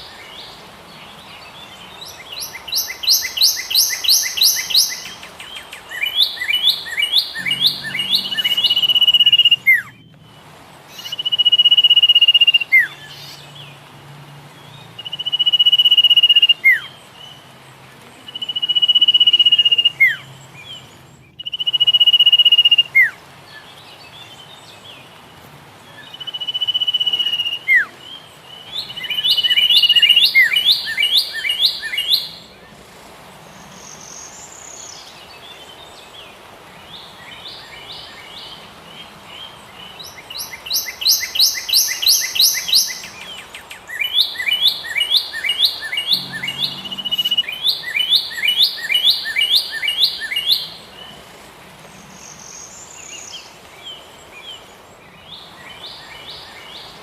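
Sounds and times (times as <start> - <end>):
rapid bird chirping: 0.0 - 13.8, 26.0 - 32.6, 36.8 - 51.2.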